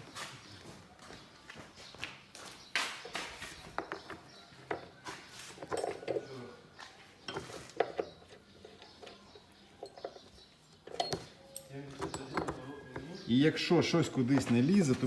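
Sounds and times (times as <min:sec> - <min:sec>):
hand tools and bolts knocking: 0:03.0 - 0:06.4, 0:07.2 - 0:13.1, 0:14.0 - 0:15.0.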